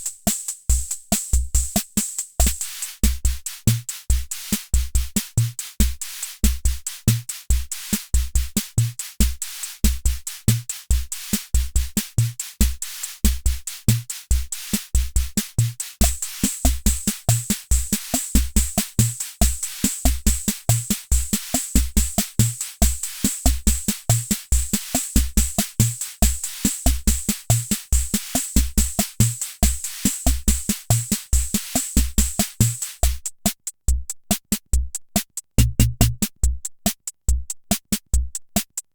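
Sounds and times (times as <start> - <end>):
drum machine beat: 11.6 - 38.9.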